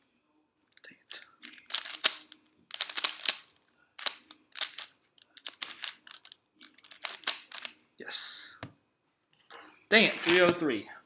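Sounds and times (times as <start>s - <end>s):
puzzle cube clacking: 1.1s - 7.8s.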